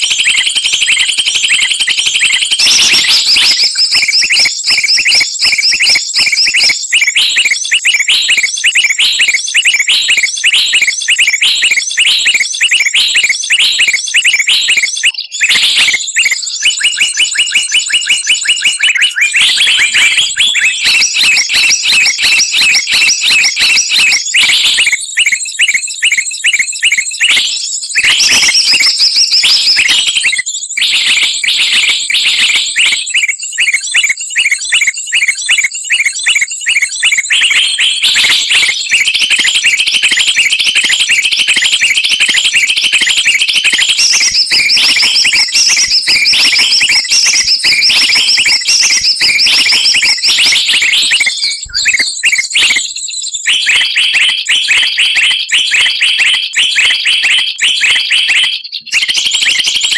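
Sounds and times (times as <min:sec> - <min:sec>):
songbirds chirping and chattering: 0:00.0 - 0:53.1.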